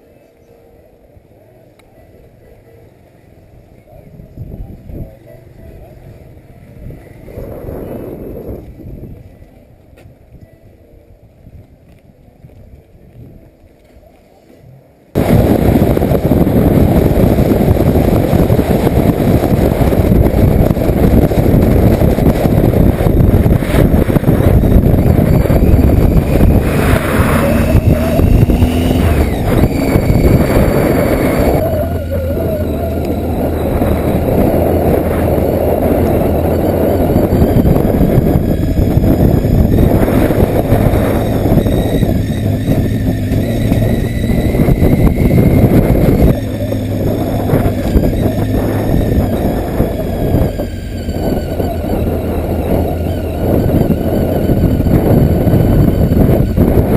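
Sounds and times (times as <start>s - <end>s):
wind rushing over microphone: 3.8s - 13.7s, 14.7s - 56.9s
motorcycle engine running: 15.2s - 56.9s.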